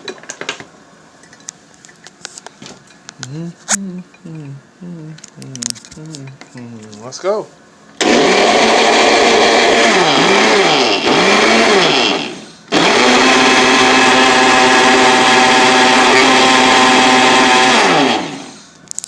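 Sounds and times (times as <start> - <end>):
kitchen mixer motor blending batter: 8.0 - 18.6.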